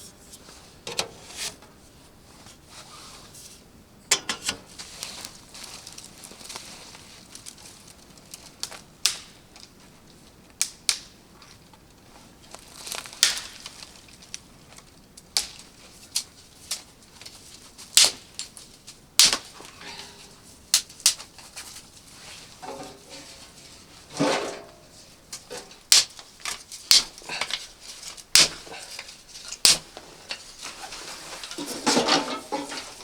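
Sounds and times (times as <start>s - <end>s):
scraping: 0.0s - 1.8s, 22.2s - 25.7s, 30.4s - 33.0s.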